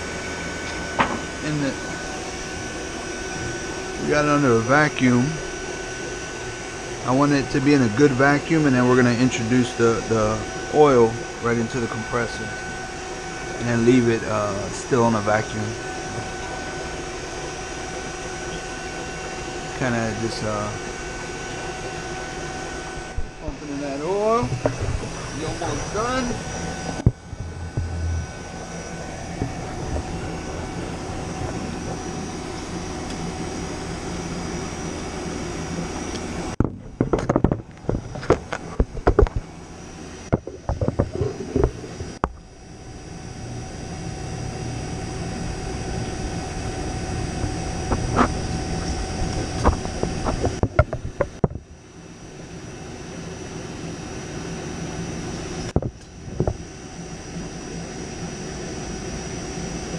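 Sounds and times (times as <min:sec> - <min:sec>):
machinery running: 0:00.0 - 0:51.4
vacuum pump droning: 0:00.0 - 0:59.9
sharp clicks and knocks: 0:36.1 - 0:39.5, 0:40.3 - 0:42.4, 0:49.3 - 0:51.6.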